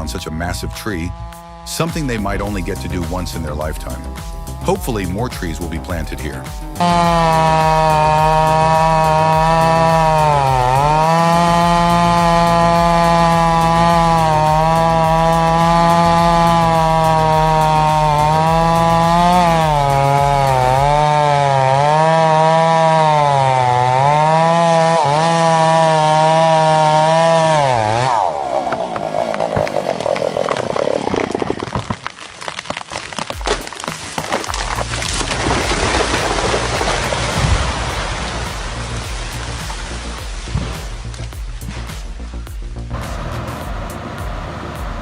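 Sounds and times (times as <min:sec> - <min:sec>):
wood crackling and cracking: 0:00.0 - 0:42.8
chainsaw cutting tree trunk: 0:00.0 - 0:45.0.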